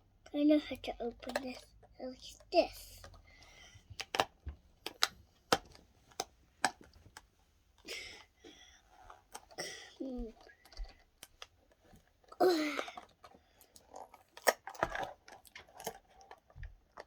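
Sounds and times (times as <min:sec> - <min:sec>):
wrapping rustling: 0:00.8 - 0:17.0
plastic packaging clicks and snaps: 0:03.9 - 0:08.0, 0:10.4 - 0:17.0.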